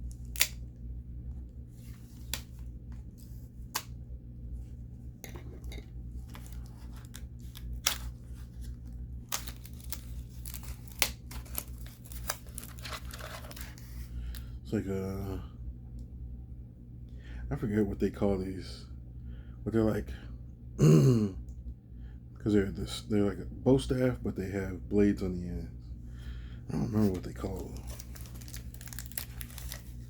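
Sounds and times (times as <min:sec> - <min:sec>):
steady low hum: 0:00.0 - 0:30.0
packaging tearing and crinkling: 0:00.1 - 0:00.6, 0:06.2 - 0:13.9, 0:27.0 - 0:30.0.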